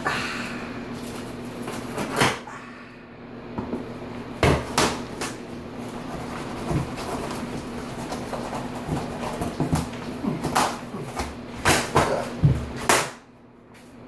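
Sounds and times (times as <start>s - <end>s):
cardboard boxes knocking and thumping: 6.2s - 13.0s.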